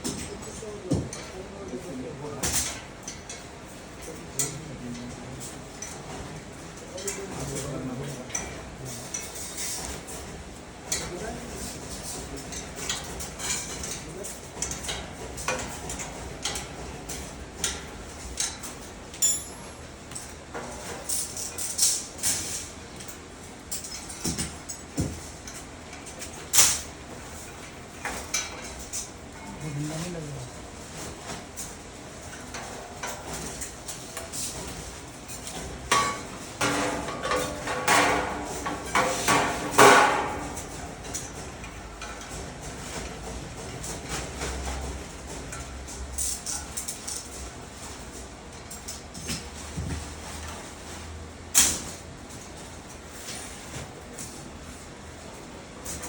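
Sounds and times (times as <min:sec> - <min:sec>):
metal parts knocking and ringing: 0:19.2 - 0:19.6.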